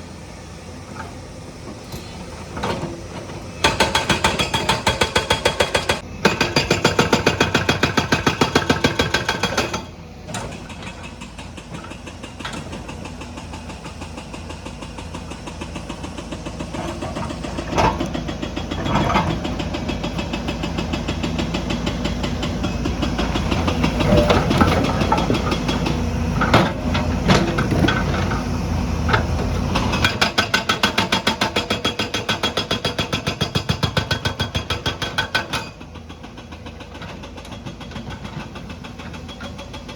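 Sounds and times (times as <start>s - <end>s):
hydraulic breaker hammering: 3.6s - 9.9s
diesel engine running: 4.7s - 30.2s.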